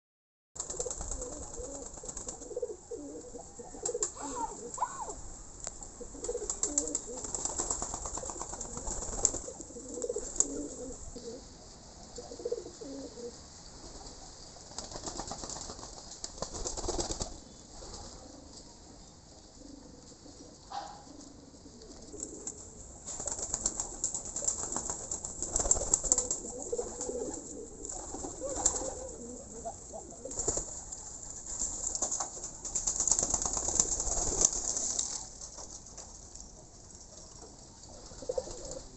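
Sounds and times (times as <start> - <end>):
dove cooing: 0.7 - 5.3, 6.0 - 7.5, 8.1 - 11.5, 12.1 - 13.4, 19.5 - 22.8, 25.5 - 30.7, 38.0 - 38.9.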